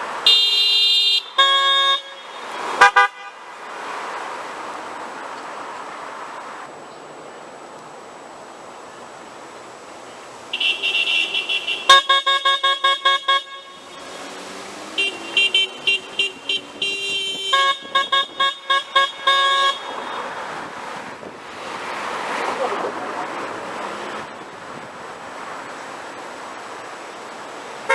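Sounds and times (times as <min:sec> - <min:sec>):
car horns honking rapid toots: 0:00.0 - 0:03.8, 0:10.5 - 0:20.7
traffic hiss: 0:00.0 - 0:27.9.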